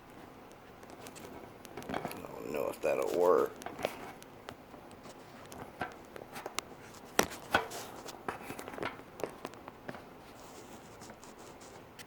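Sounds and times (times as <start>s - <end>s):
handling clicks and knocks: 0.4s - 10.1s.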